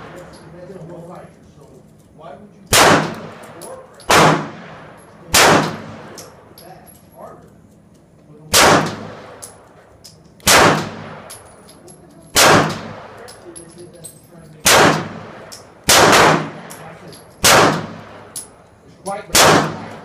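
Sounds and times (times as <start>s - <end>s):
pistol shots with echo: 2.7s - 6.4s, 8.5s - 9.6s, 10.4s - 11.5s, 12.3s - 13.4s, 14.6s - 18.6s, 19.3s - 20.0s.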